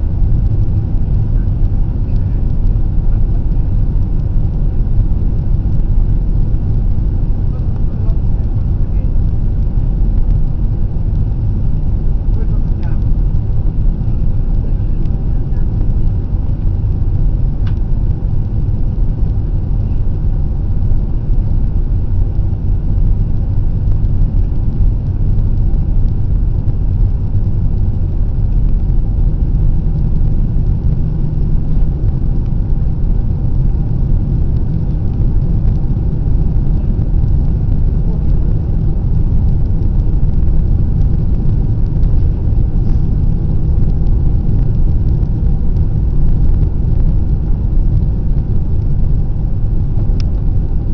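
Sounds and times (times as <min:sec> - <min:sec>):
airliner cabin engine rumble: 0:00.0 - 0:50.9.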